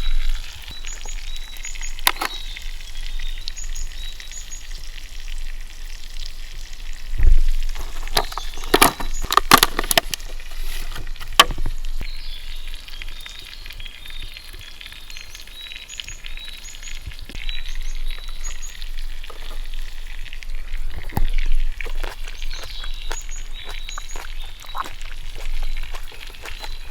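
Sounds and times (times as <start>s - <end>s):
small birds chirping: 0.0s - 5.4s, 7.8s - 26.9s
sharp cracks and knocks: 7.8s - 10.4s, 11.2s - 11.8s.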